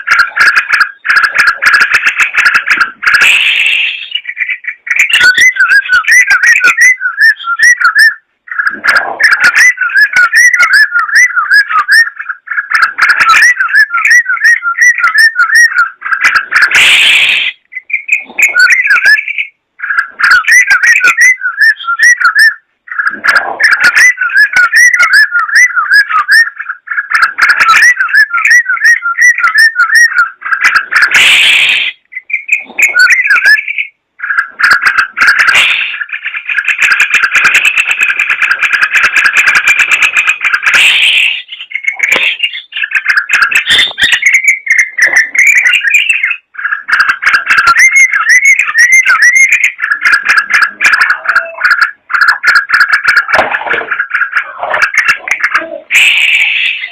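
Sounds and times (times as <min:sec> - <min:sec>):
bird singing: 0:00.0 - 0:56.9
harsh bird call: 0:00.0 - 0:56.9.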